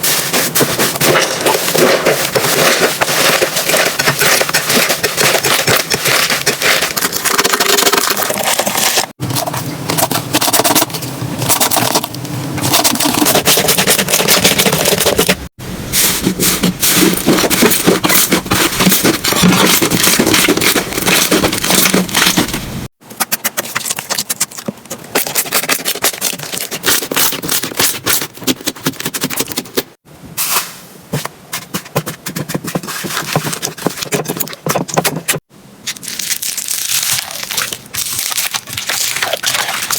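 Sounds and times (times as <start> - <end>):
slime crackling and crunching: 0.0 - 9.2, 16.8 - 22.8, 35.8 - 39.9.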